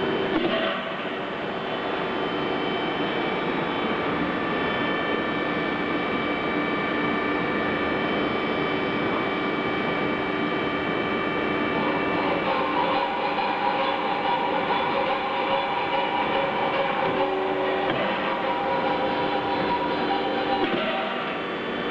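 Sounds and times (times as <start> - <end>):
machine drone with humming tones: 0.0 - 21.9.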